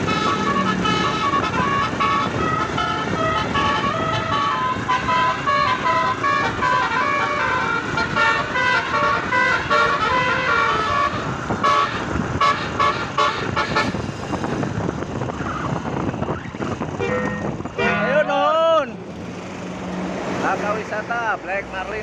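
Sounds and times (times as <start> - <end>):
multi-tone musical bus horn: 0.0 - 14.6, 16.9 - 18.7
short staccato horn blasts: 17.0 - 18.5.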